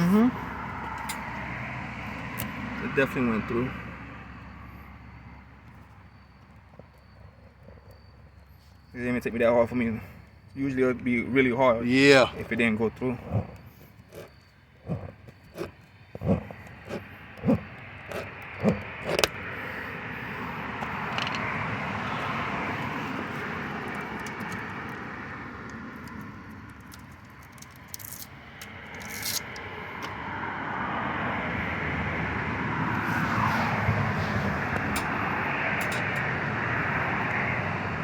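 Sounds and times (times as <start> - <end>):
passing road traffic: 0.0 - 38.0.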